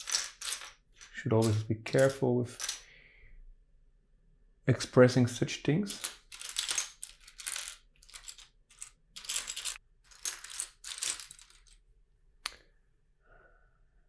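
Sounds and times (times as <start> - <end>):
plastic bricks clattering: 0.0 - 2.8, 5.9 - 11.8.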